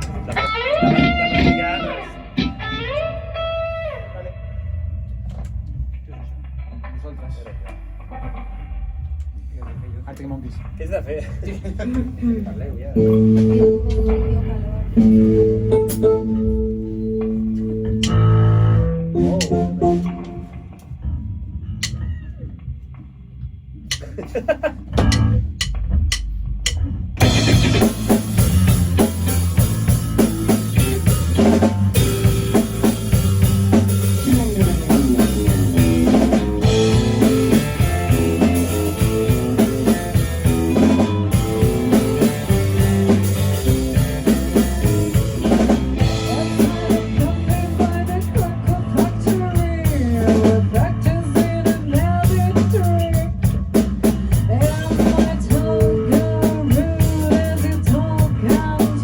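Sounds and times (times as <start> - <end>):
rock band playing: 0.0 - 5.6, 13.0 - 21.0, 27.2 - 59.0.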